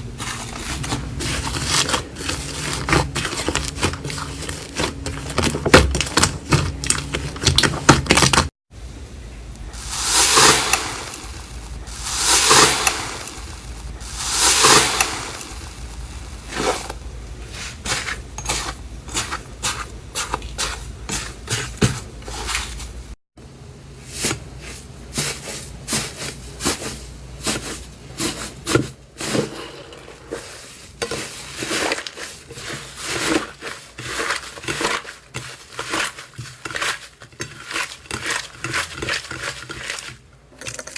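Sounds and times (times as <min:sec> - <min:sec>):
slime squishes: 0:00.0 - 0:08.5, 0:30.3 - 0:40.9.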